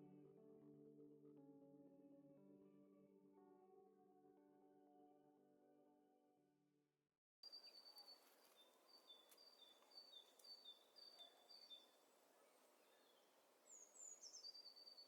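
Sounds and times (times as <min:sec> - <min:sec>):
soft outdoor hiss: 0:07.4 - 0:15.0.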